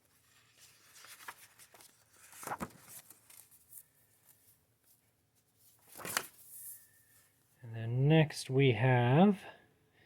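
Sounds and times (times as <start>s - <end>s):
paper page turning: 0.0s - 5.0s, 5.6s - 6.9s.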